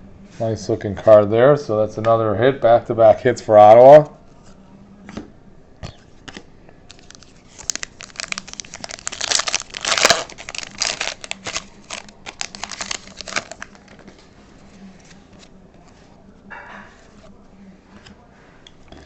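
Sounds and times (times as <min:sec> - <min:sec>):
foil wrapper crinkling and tearing: 0:06.9 - 0:14.2.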